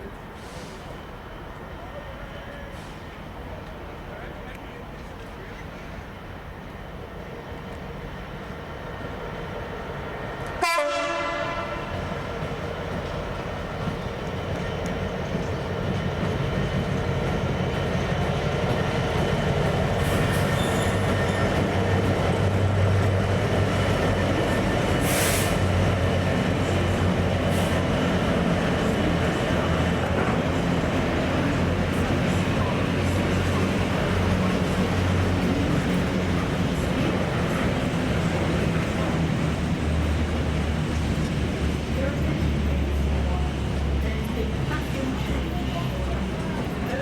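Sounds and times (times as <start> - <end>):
locomotive engine drone: 0.0 - 47.0
train horn blast: 10.6 - 12.0
train wagons rolling: 11.3 - 47.0.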